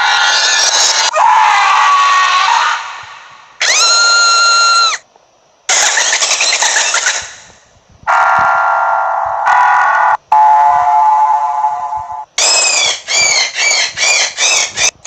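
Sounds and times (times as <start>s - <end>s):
rising pitch sound effect: 8.1s - 12.3s
noisy sound effect: 8.1s - 12.4s.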